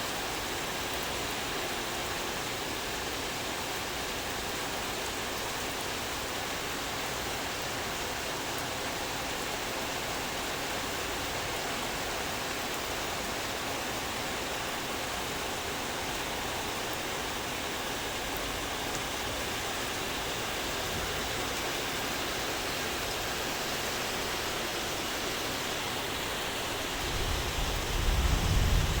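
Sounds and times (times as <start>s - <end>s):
steady rain: 0.0s - 29.0s
low rumble: 27.0s - 29.0s.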